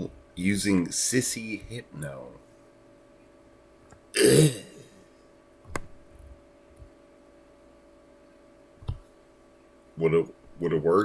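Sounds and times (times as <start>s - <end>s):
faint steady hum: 0.0s - 11.0s
man's loud vocal noise: 4.2s - 4.9s.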